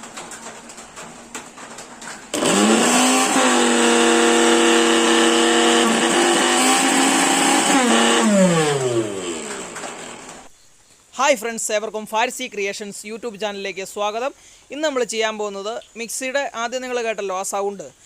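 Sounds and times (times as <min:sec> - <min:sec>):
mixer grinder motor running: 0:02.3 - 0:10.5.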